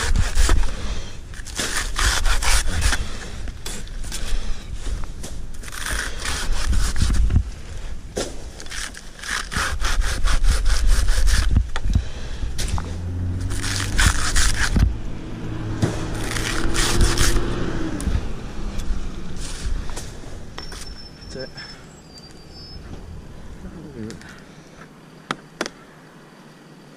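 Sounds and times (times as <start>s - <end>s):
hand saw cutting wood: 0.0s - 3.9s, 5.6s - 7.2s, 8.6s - 11.6s, 13.4s - 14.9s, 15.8s - 17.6s
faint low engine hum: 11.6s - 25.2s.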